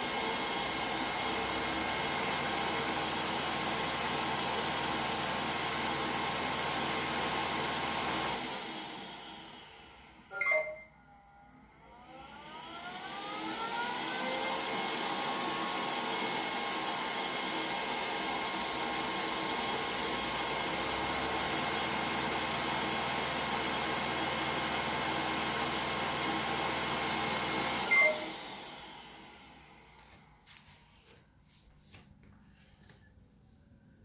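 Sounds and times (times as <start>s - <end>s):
robot vacuum motor whine: 12.1s - 29.7s.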